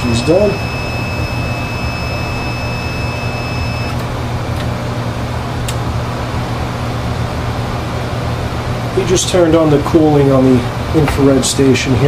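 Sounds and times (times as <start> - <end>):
thin high whine: 0.0 - 4.1
machine hum: 0.0 - 12.0.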